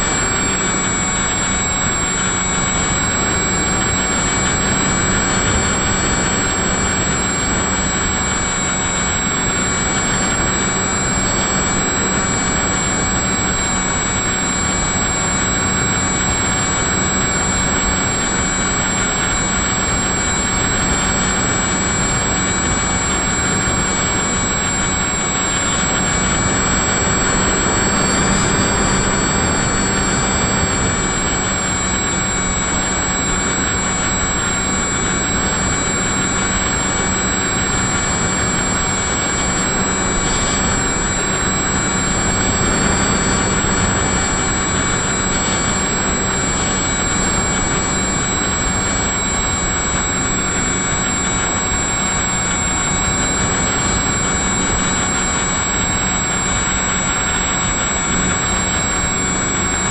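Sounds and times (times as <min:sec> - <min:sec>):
electric motor whine: 0:00.0 - 0:59.9
rushing air noise: 0:36.0 - 0:48.0.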